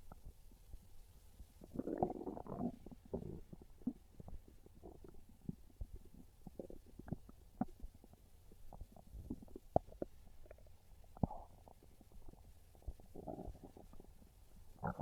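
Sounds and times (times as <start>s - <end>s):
stomach gurgling and rumbling: 0.0s - 15.0s
stomach pops: 8.7s - 14.2s.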